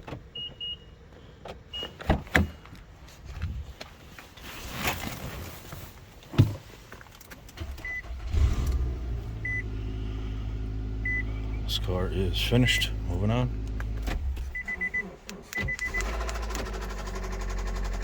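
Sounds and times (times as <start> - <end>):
vehicle engine idling: 7.6 - 18.0
short electronic beeps: 9.4 - 9.6, 11.0 - 11.7, 14.6 - 16.1.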